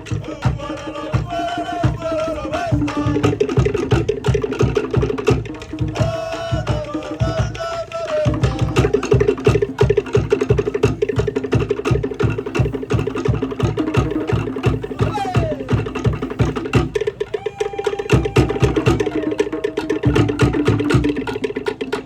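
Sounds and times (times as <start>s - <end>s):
voices chanting: 0.0s - 21.5s
deep drum strokes: 0.0s - 22.0s.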